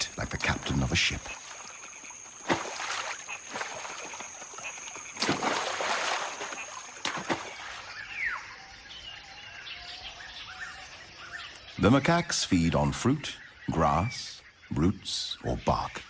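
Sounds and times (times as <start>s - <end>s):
water splashing: 0.0s - 8.1s.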